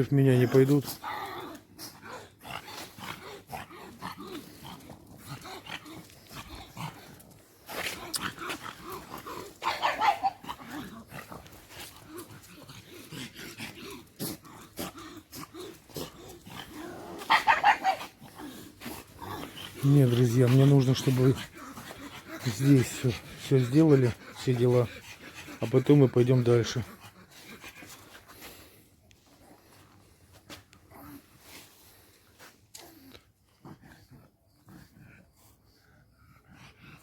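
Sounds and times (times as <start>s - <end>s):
dogs barking: 7.8s - 10.7s, 16.6s - 18.2s.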